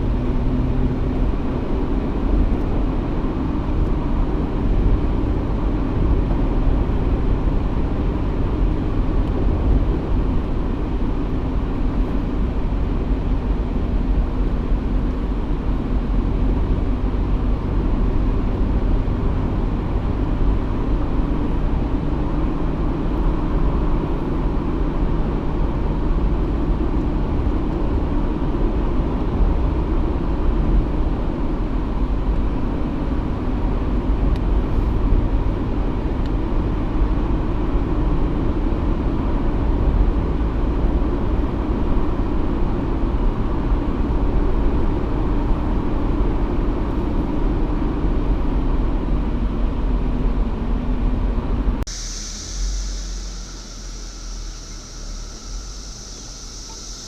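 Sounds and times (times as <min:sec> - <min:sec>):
off-road vehicle engine rumbling: 0:00.0 - 0:57.0.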